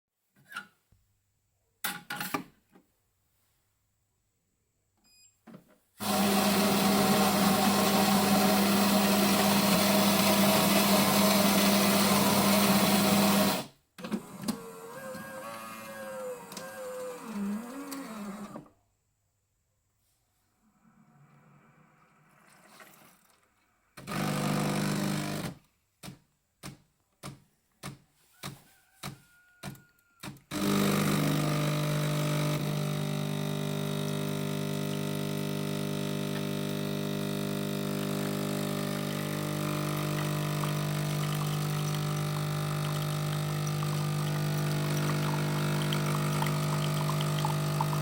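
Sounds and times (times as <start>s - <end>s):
coffee machine loud hum: 6.0s - 13.7s, 14.5s - 18.5s, 24.1s - 25.4s, 30.5s - 48.0s
coffee machine noise burst: 6.0s - 13.7s, 30.5s - 48.0s
coffee machine short pulses: 24.1s - 25.4s, 30.5s - 48.0s.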